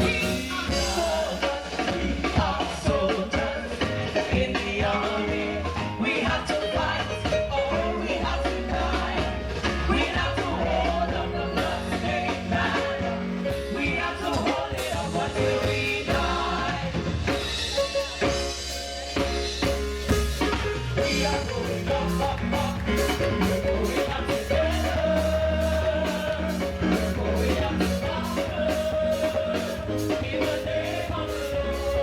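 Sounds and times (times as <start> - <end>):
voices singing: 0.0 - 18.8, 20.3 - 32.0
band playing worship song: 0.0 - 32.0
drum kit: 0.0 - 32.0
low bass: 19.2 - 32.0.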